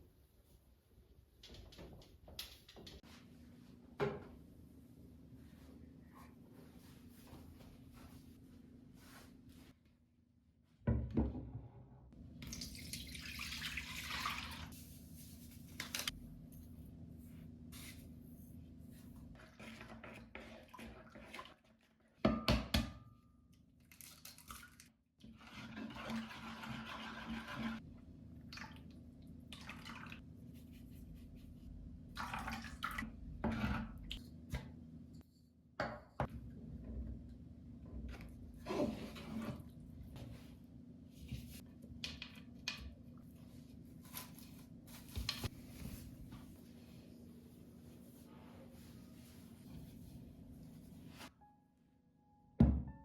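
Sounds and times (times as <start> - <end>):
water running at sink: 12.4 - 14.8.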